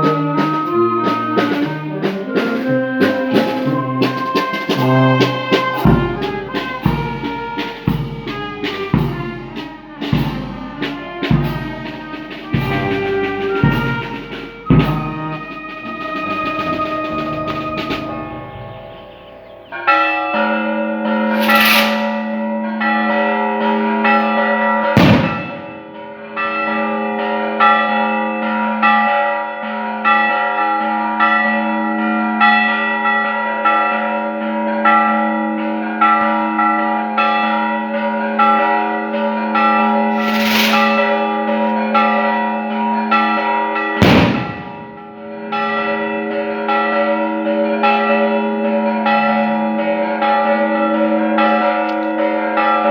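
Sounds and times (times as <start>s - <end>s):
church bells ringing: 0.0s - 52.9s
rushing hiss: 21.4s - 22.2s, 40.2s - 41.2s
sharp bang: 21.4s - 22.2s, 25.0s - 25.8s, 40.2s - 41.2s.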